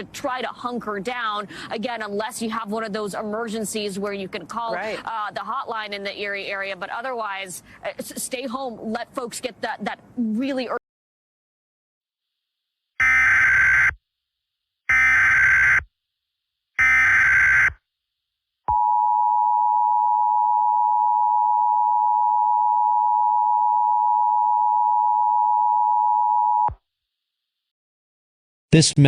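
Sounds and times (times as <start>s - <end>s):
screechy digital data bursts: 16.8s - 17.8s.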